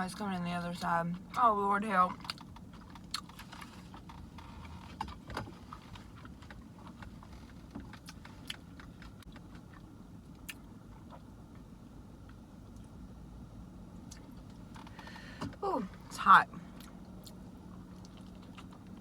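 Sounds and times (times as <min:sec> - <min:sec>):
low car hum: 0:00.0 - 0:19.0
chewing clicks and crackles: 0:02.1 - 0:11.6, 0:16.8 - 0:19.0.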